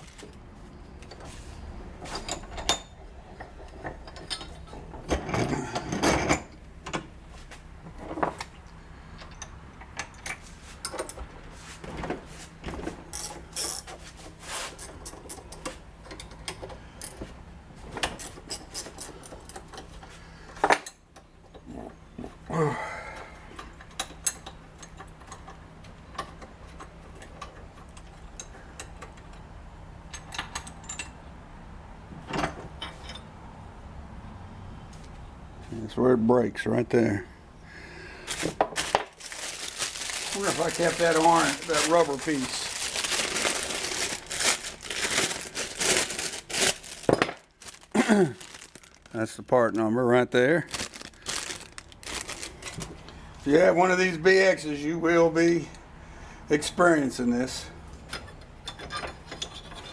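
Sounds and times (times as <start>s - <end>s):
metal parts clinking: 13.2s - 13.9s, 38.3s - 49.2s.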